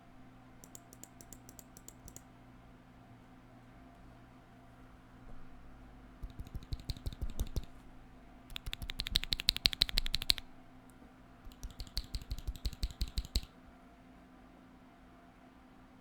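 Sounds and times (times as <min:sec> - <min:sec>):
mechanical keyboard typing: 0:00.6 - 0:02.2, 0:06.2 - 0:07.8, 0:08.5 - 0:10.5, 0:11.5 - 0:13.5.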